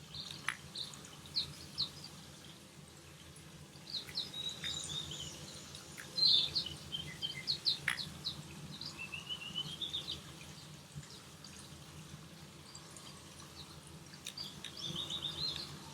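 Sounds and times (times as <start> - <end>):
finch twittering chirps: 3.9 - 10.2, 14.3 - 15.7.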